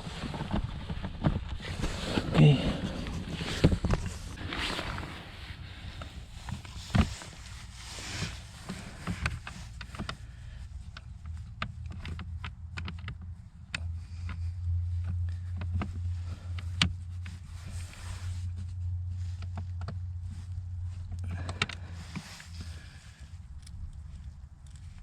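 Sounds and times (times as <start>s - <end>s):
sharp clicks of parts handled: 21.0s - 25.0s.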